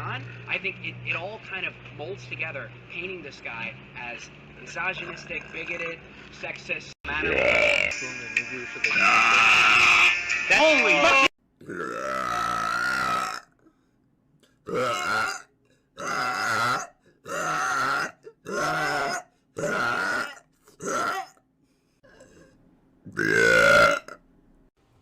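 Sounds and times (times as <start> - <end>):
woman burping: 11.6 - 13.5, 16.0 - 21.4, 23.1 - 24.2.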